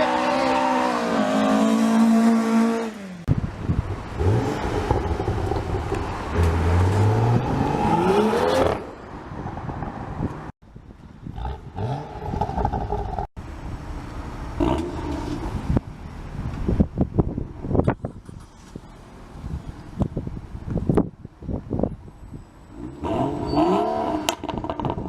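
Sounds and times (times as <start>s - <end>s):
car engine revving: 4.1s - 8.9s
exhaust pops and crackles: 24.3s - 25.0s.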